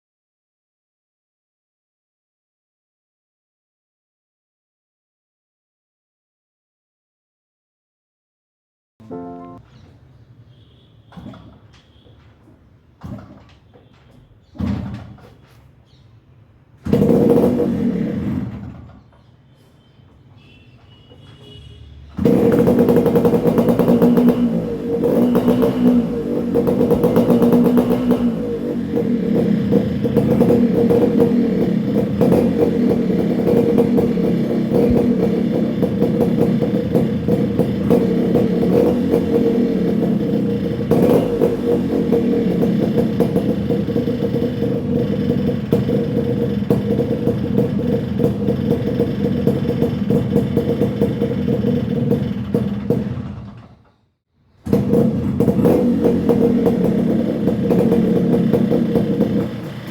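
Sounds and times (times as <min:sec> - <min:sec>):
two-stroke motorcycle engine revving: 0:16.9 - 0:18.8, 0:22.2 - 0:53.7, 0:54.6 - 0:59.9.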